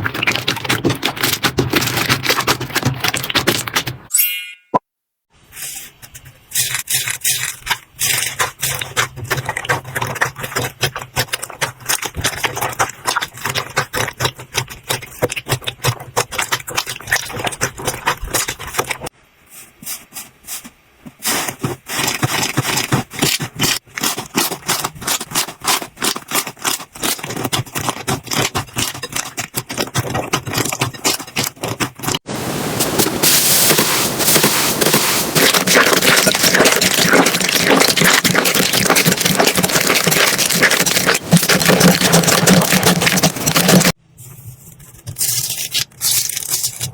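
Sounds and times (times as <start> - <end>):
slime crackling and popping: 33.3 - 44.0, 45.2 - 46.9.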